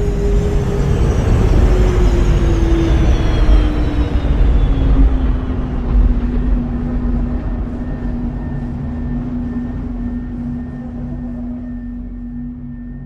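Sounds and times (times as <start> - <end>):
spaceship passing with deep rumble: 0.0 - 13.0.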